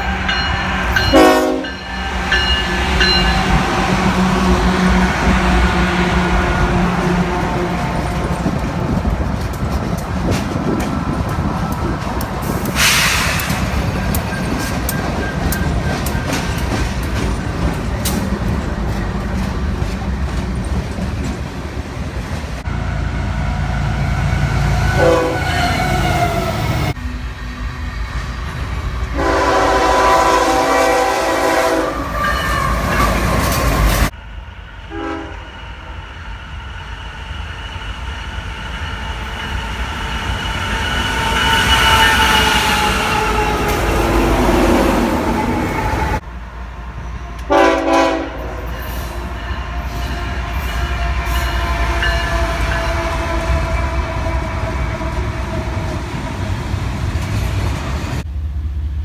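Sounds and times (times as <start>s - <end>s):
locomotive air horn blasts: 0.0s - 8.4s, 24.8s - 26.4s, 29.1s - 33.5s, 34.9s - 35.5s, 47.4s - 55.2s
train rumble and wheel clatter: 0.0s - 59.0s.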